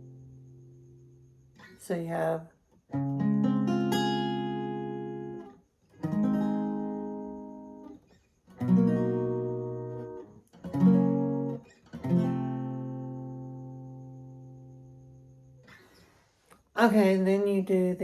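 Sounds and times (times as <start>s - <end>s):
guitar strumming bar chords: 8.6s - 14.8s.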